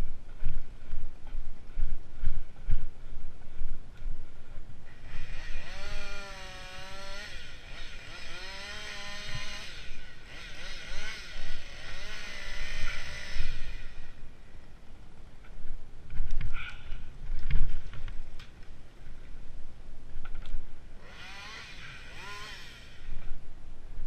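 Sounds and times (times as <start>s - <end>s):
chainsaw cutting wood: 4.9s - 14.2s, 21.0s - 23.4s.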